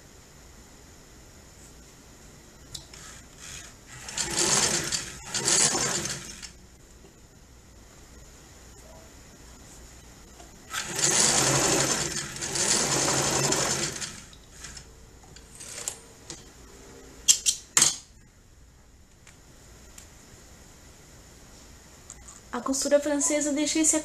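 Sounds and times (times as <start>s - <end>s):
sewing machine stitching: 2.8s - 6.6s, 10.7s - 14.9s.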